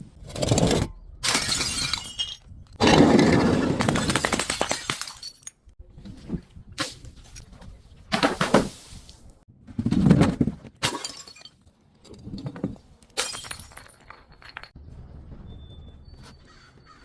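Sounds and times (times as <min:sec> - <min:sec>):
glass bottles shattering: 0:01.2 - 0:05.7, 0:10.8 - 0:11.6, 0:13.2 - 0:14.8.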